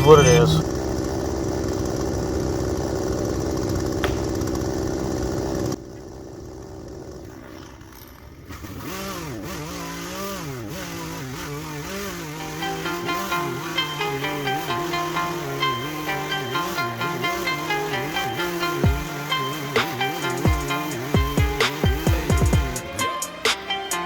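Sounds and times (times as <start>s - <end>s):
background music: 0.0s - 0.6s, 12.4s - 24.0s
chainsaw running: 0.0s - 24.0s.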